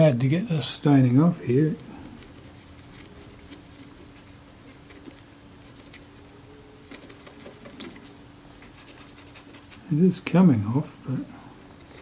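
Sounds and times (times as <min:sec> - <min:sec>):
steady low hum: 0:00.0 - 0:12.0
cotton bud rubbing metal: 0:01.5 - 0:10.0.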